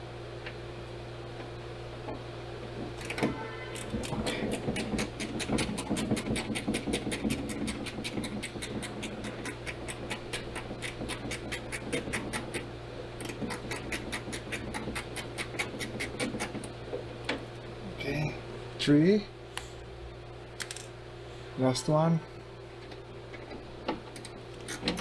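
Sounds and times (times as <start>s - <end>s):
scratchy rubbing against trim: 3.8s - 12.7s, 13.3s - 16.7s.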